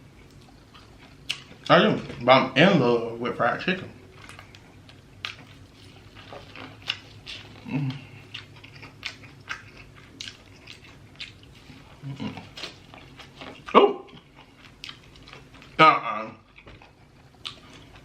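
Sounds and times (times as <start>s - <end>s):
wet chewing: 4.1s - 15.8s, 16.4s - 18.0s
lip smacking: 5.2s - 15.5s.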